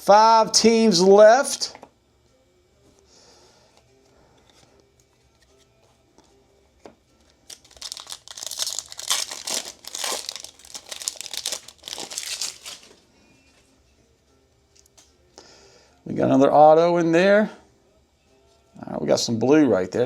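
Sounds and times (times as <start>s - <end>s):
foil wrapper tearing and crinkling: 7.5s - 12.9s.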